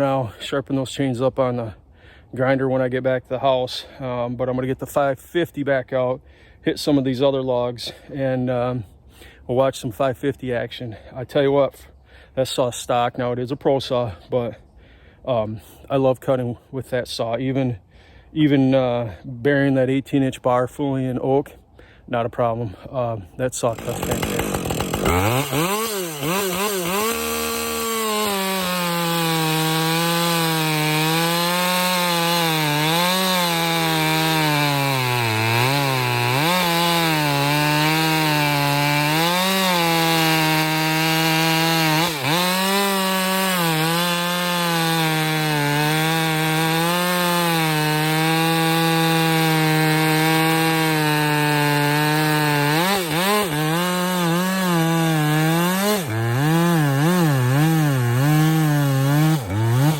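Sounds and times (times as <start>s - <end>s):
chainsaw cutting log: 23.6s - 59.9s.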